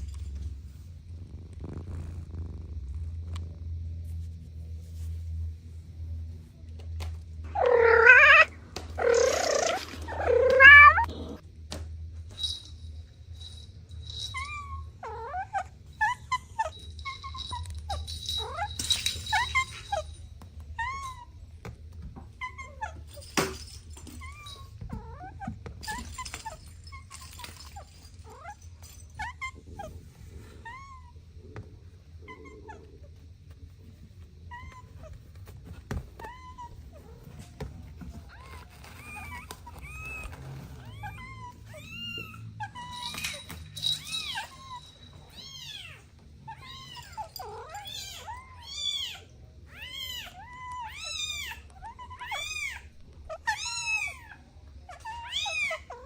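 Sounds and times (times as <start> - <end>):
low steady hum: 0.0 - 56.0
cat meowing: 7.5 - 11.4
kitten mewing: 7.5 - 11.4.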